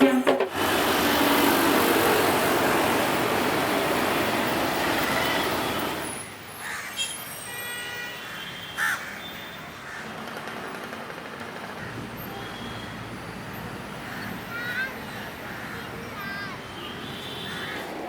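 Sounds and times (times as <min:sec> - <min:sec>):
crows cawing: 0:06.6 - 0:07.0, 0:08.8 - 0:09.2, 0:09.8 - 0:10.1, 0:14.0 - 0:15.9, 0:17.5 - 0:17.9.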